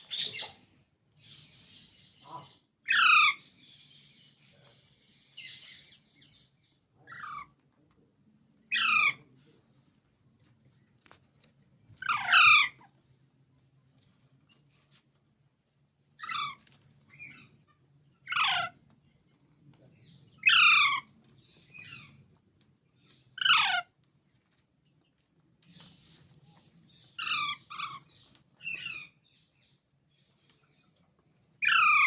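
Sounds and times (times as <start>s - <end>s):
parrot squawking: 2.9s - 3.4s, 12.0s - 12.8s, 18.3s - 18.8s, 23.4s - 23.9s, 27.2s - 28.0s, 31.6s - 32.0s.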